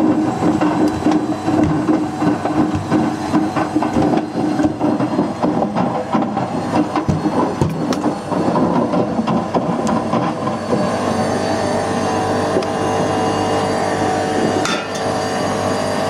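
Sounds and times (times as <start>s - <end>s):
objects clattering in washing machine: 0.0s - 10.4s, 14.6s - 15.2s.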